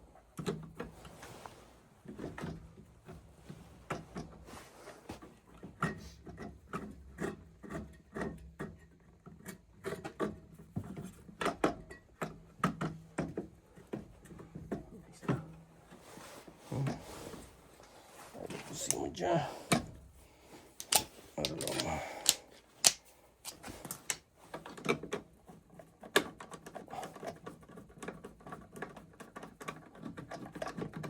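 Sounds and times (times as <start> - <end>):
metal tools clicking and knocking: 20.8 - 24.2.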